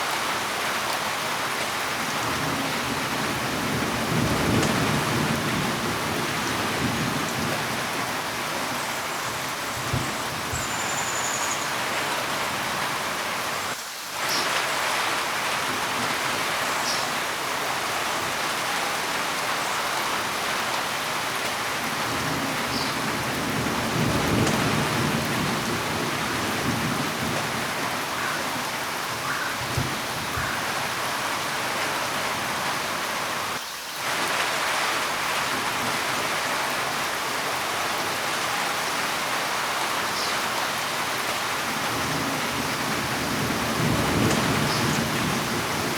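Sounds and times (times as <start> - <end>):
heavy rain hissing: 0.0 - 45.9
low rumble of thunder: 2.2 - 8.2, 21.9 - 28.1, 41.7 - 45.9.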